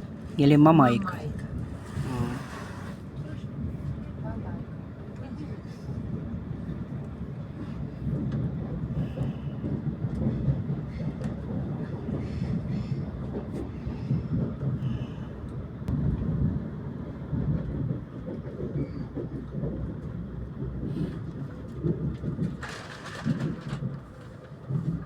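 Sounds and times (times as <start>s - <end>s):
train wheels rumbling: 0.0s - 25.0s.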